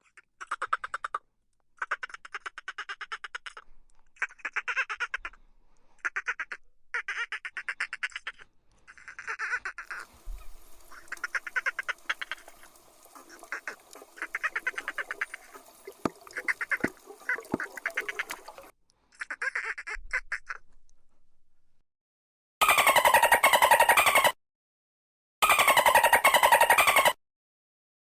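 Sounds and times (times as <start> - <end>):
dolphin burst-pulse calls: 9.8 - 18.7, 25.4 - 27.2.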